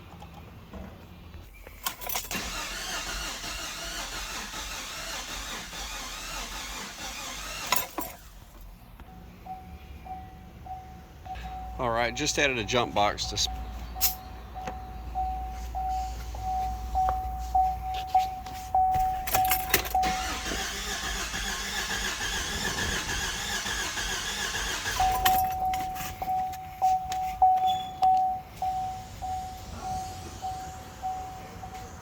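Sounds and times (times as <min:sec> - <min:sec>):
car engine cranking without firing: 0:01.5 - 0:13.6, 0:14.6 - 0:32.0
dashboard warning chime beeping: 0:09.0 - 0:20.7, 0:24.6 - 0:32.0.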